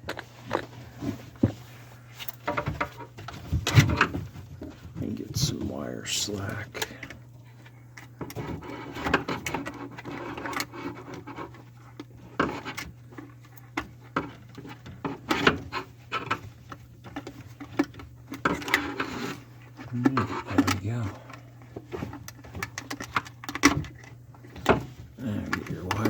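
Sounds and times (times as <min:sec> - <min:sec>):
clicks knocks and rubbing: 0:00.0 - 0:05.6
steady low hum: 0:00.0 - 0:26.0.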